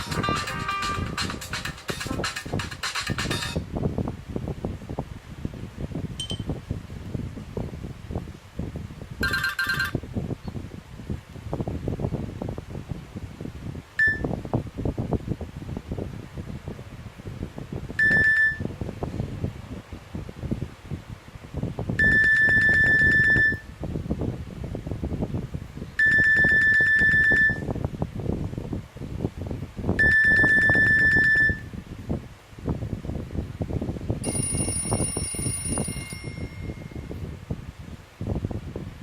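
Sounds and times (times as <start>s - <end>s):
phone alert beep: 6.2s - 6.5s, 9.2s - 10.0s, 18.0s - 18.6s.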